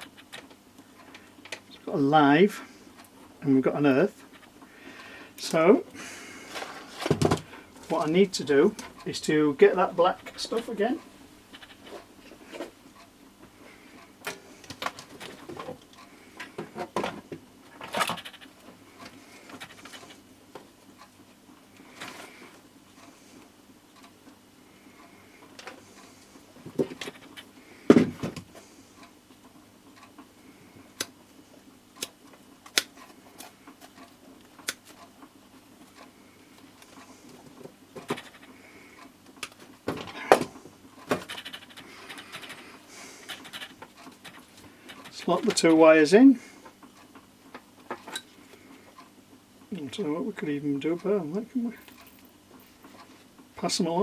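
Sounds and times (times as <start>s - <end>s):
small parts clicking and rustling: 14.0s - 20.7s, 25.6s - 28.5s, 32.0s - 45.7s, 51.8s - 53.2s
clicks and knocks of wiring parts: 14.2s - 20.7s, 39.3s - 42.6s.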